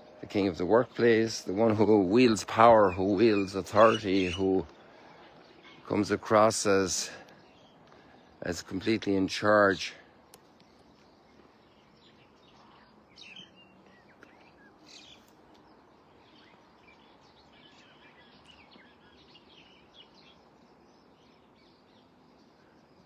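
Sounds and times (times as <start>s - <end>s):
birds chirping and calling: 0.0s - 23.0s
steady outdoor hiss: 0.0s - 23.0s.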